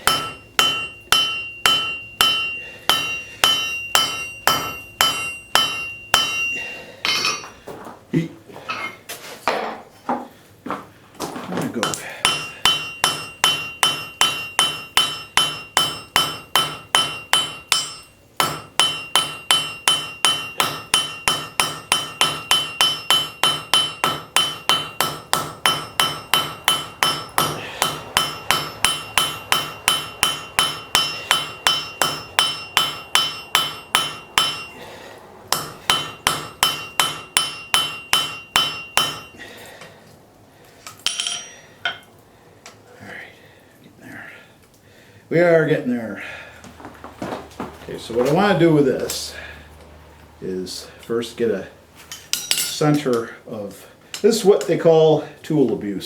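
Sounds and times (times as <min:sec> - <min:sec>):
hammer ringing on anvil: 0:00.0 - 0:07.5, 0:11.8 - 0:34.9, 0:35.5 - 0:39.5, 0:41.0 - 0:42.1, 0:52.2 - 0:53.1.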